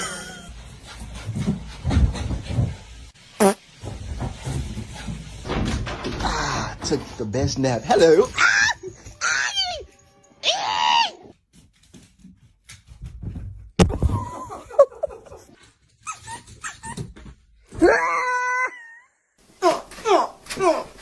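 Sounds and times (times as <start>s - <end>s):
dog whining and yipping: 16.0s - 17.1s.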